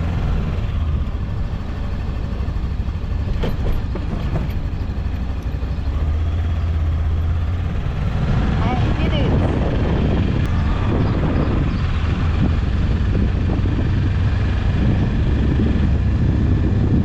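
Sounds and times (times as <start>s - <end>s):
motorcycle engine and road rumble: 0.0s - 17.0s
wind noise: 2.8s - 17.0s
tyres knocking on speed bump: 3.2s - 5.1s.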